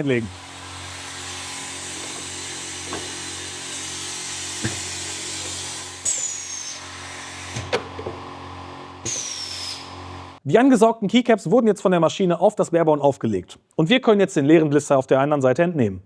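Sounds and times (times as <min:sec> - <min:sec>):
machine motor hum with hiss: 0:00.0 - 0:10.4.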